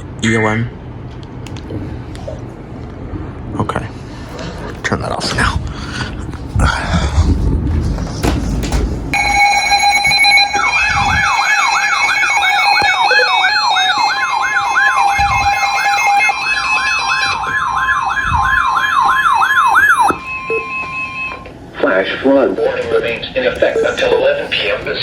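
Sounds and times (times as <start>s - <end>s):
rapid siren-like warble: 9.1s - 21.5s
steady attention tone: 9.1s - 25.0s
steady single tone: 9.2s - 11.4s, 20.0s - 21.5s.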